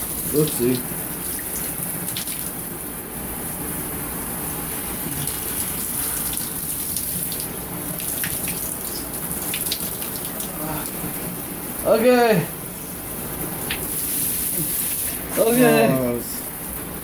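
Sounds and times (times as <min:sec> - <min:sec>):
shower water splashing on sponge: 0:00.0 - 0:02.6, 0:05.2 - 0:11.0.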